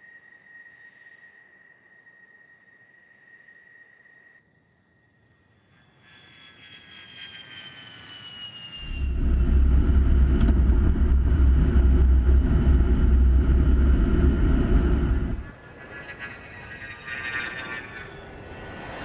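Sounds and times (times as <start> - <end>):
jet engine whine: 0.0 - 19.0
jet engine roar: 5.9 - 19.0.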